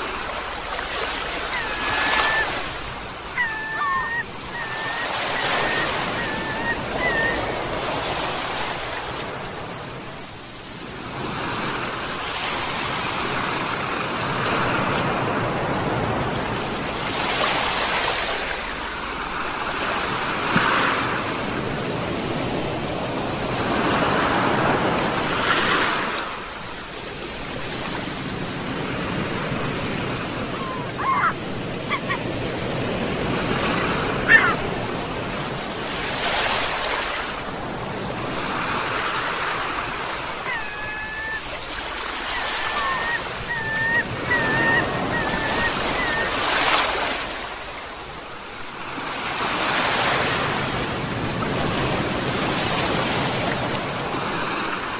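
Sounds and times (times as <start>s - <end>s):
sea waves breaking: 0.0s - 54.9s
seagull calls: 1.0s - 8.0s, 30.5s - 32.4s, 34.2s - 34.7s, 40.2s - 46.8s.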